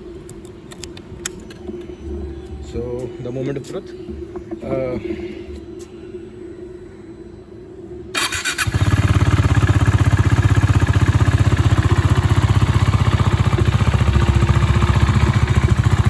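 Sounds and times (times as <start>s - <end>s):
engine cranking: 8.2s - 16.0s
engine idling: 8.2s - 16.0s.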